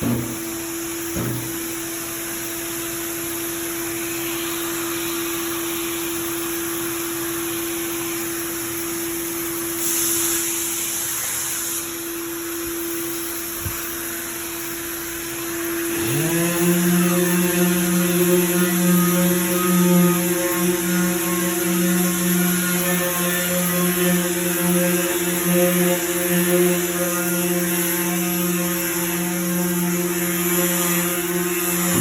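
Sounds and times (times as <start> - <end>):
dust extraction vacuum: 0.0 - 32.0
orbital sander whine: 0.0 - 32.0
second motor spinning up: 12.1 - 22.3, 29.7 - 32.0.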